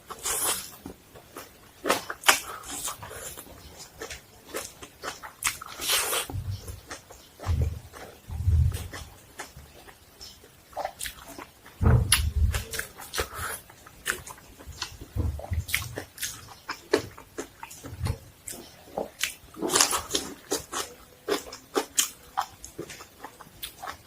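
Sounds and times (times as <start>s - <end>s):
person chewing crunchily: 0.0s - 24.0s
low thumps: 6.3s - 6.8s, 7.4s - 8.9s, 11.8s - 12.8s, 15.1s - 15.8s.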